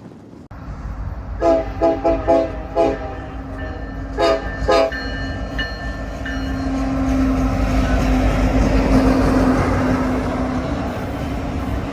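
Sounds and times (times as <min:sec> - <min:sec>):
passing train rumble: 0:00.0 - 0:11.9
locomotive air horn blasts: 0:01.4 - 0:05.2.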